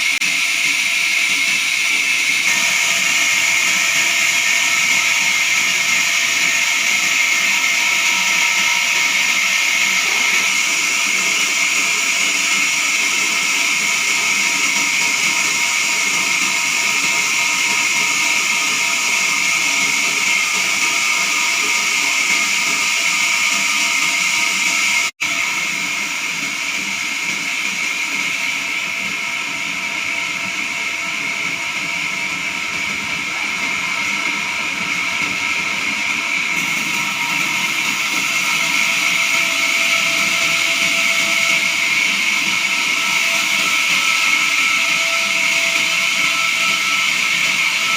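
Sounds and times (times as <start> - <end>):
band saw blade cutting log: 2.0 - 11.7.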